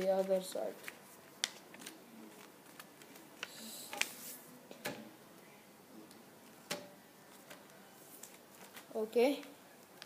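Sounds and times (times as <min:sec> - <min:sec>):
paper rustling and crackling: 0:00.0 - 0:04.5, 0:07.3 - 0:10.0.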